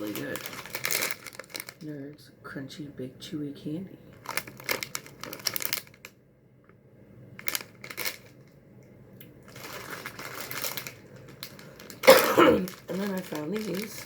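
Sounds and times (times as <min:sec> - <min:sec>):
candy package rustling: 0:00.0 - 0:02.2, 0:04.1 - 0:06.2, 0:07.3 - 0:08.6, 0:09.4 - 0:14.0.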